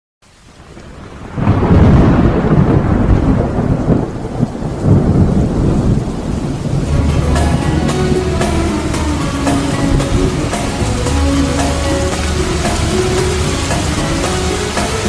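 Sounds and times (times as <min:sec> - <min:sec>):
steady rain: 0:00.2 - 0:15.0
low rumble of thunder: 0:00.7 - 0:10.5.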